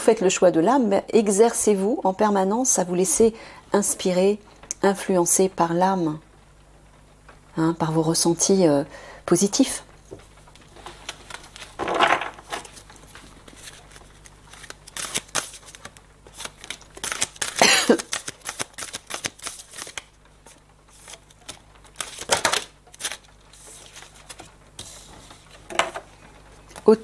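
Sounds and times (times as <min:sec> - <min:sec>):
cards rustling: 0:10.6 - 0:26.0
cards clicking and flicking: 0:11.1 - 0:24.9.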